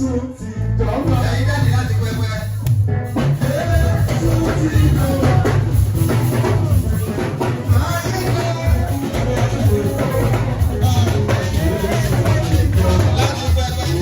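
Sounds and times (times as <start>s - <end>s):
band with drum kit and bass: 0.6s - 14.0s
choir singing: 8.7s - 14.0s.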